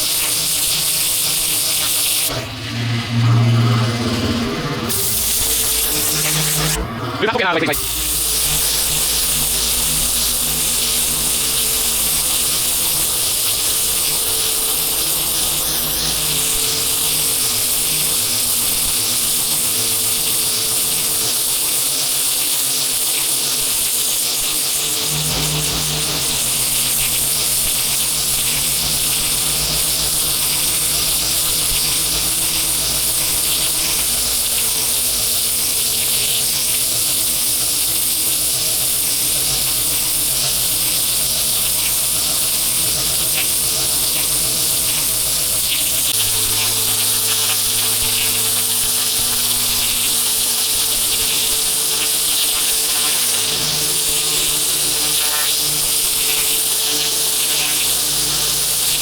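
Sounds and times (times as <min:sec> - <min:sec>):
high-pressure water jet hissing: 0:00.0 - 0:02.5, 0:04.9 - 0:59.0
pressure washer motor humming: 0:00.0 - 0:59.0.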